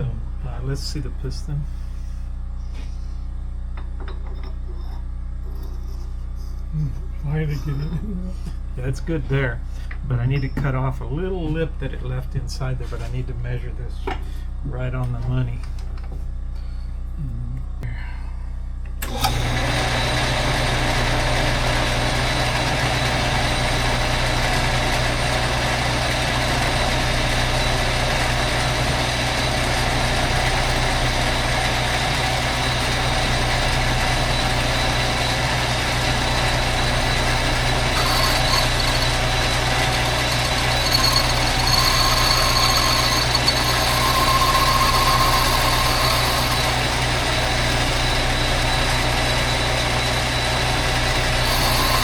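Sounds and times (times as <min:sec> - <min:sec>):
high ringing tones of cutting tool: 0:04.4 - 0:08.7, 0:32.2 - 0:52.0
metal lathe running: 0:19.0 - 0:52.0.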